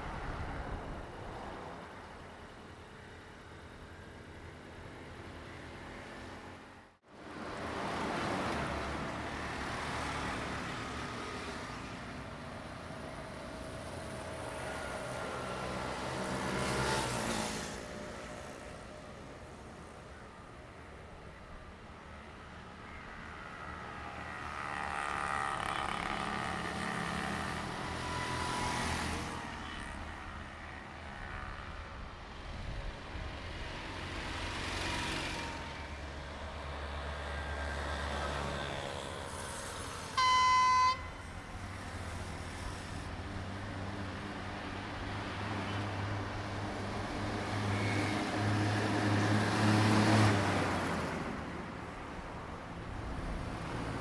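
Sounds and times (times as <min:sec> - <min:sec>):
diesel train engine drone: 0:00.0 - 0:54.0
short high train horn: 0:40.2 - 0:41.4.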